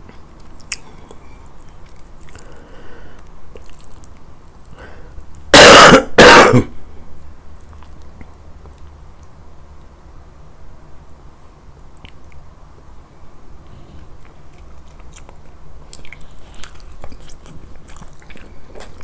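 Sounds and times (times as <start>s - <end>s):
person coughing: 5.5s - 6.8s.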